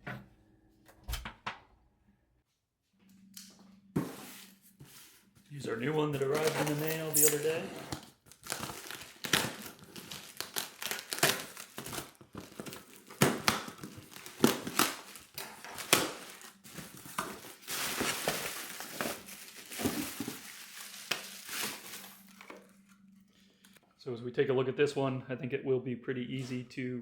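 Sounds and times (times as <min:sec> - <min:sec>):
packaging crinkling and rustling: 0:06.2 - 0:23.0.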